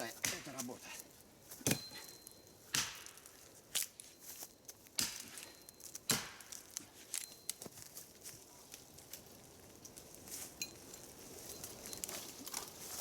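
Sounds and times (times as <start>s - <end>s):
axe chopping into tree trunk: 0.2s - 0.7s, 1.6s - 1.9s, 2.7s - 3.2s, 5.0s - 5.4s, 6.0s - 6.6s.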